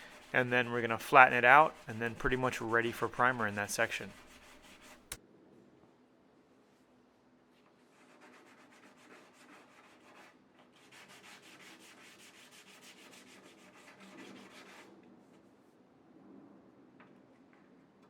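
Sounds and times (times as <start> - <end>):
rubbing on a hard surface: 0.0 - 5.2, 7.5 - 15.7.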